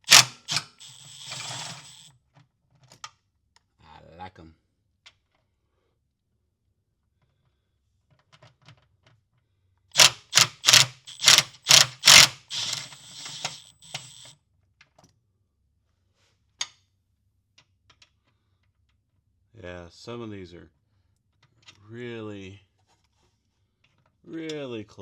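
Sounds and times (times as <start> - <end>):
ratchet clicking: 0.0 - 2.1, 10.0 - 14.3.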